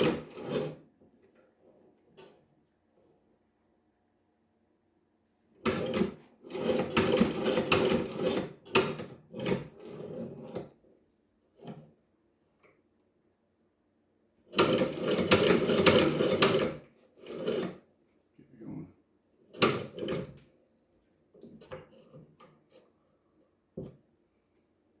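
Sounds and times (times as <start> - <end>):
sewing machine stitching: 0.0 - 0.8, 5.6 - 10.7, 14.5 - 17.8, 19.5 - 20.4.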